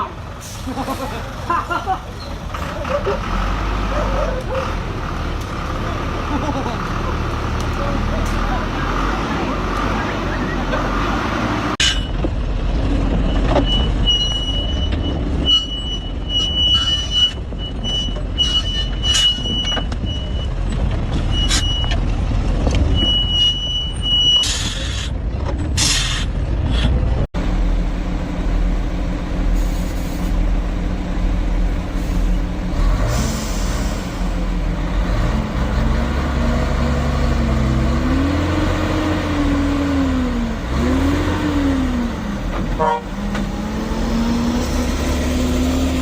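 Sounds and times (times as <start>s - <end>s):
truck diesel engine running: 0.0s - 16.8s, 26.4s - 46.0s.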